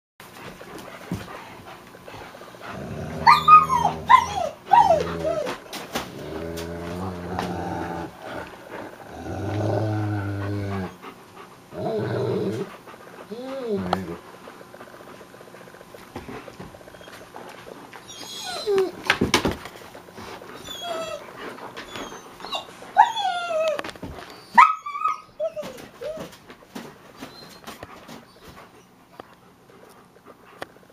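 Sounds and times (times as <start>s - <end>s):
dogs growling: 0.3s - 24.3s
dogs whining and yipping: 2.6s - 5.6s, 11.8s - 14.2s, 16.9s - 17.3s, 18.0s - 19.2s, 20.5s - 26.4s, 27.2s - 28.9s
dog yelping: 3.2s - 5.6s, 20.6s - 21.2s, 21.9s - 23.8s, 24.4s - 26.3s.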